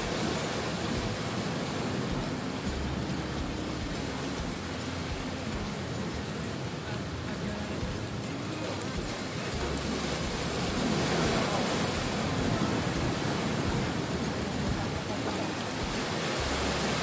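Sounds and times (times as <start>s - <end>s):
sea surf on shore: 0.0s - 17.0s.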